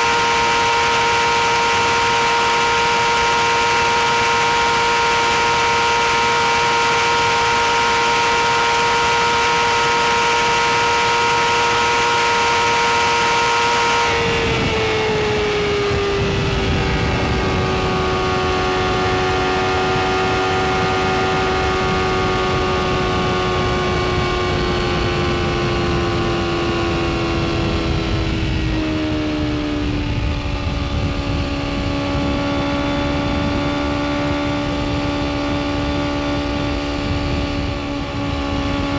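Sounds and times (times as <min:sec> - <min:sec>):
motorcycle engine at high revs: 0:00.0 - 0:38.9
heavy wind rush: 0:13.0 - 0:38.9.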